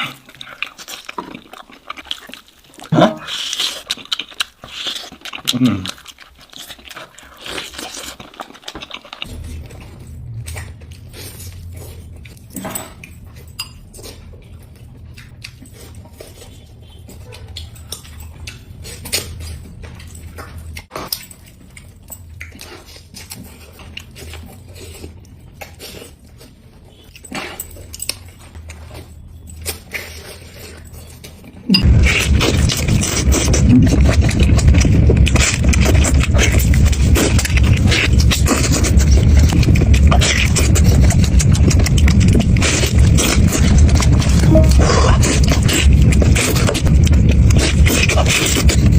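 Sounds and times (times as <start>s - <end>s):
person chewing and biting: 0.0s - 48.9s
steady low hum: 9.1s - 26.5s, 27.7s - 48.9s
loud sudden noise: 9.3s - 11.8s, 31.8s - 48.9s.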